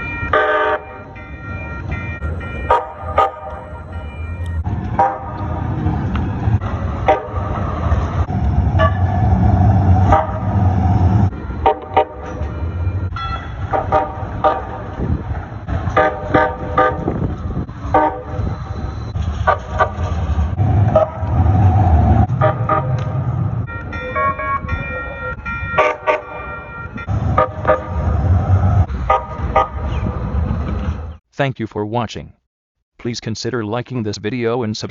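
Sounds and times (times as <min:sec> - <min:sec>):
moving train rumble: 0:00.0 - 0:31.2
train horn short toots: 0:02.6 - 0:03.7, 0:10.0 - 0:10.7, 0:11.6 - 0:14.8, 0:15.9 - 0:17.1, 0:20.9 - 0:21.4, 0:22.3 - 0:23.2, 0:25.8 - 0:26.5, 0:27.3 - 0:28.1, 0:29.0 - 0:29.8.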